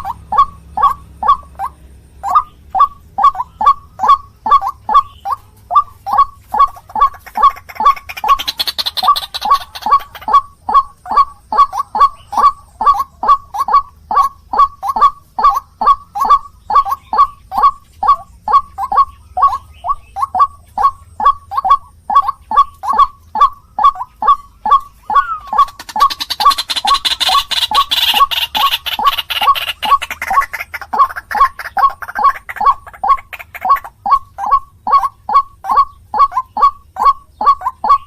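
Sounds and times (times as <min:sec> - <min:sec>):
bird calling short loud notes: 0:20.4 - 0:38.0.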